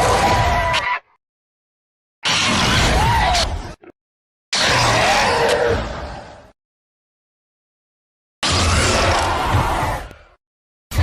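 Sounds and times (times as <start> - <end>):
monster cry: 4.5 - 6.5, 8.4 - 11.0.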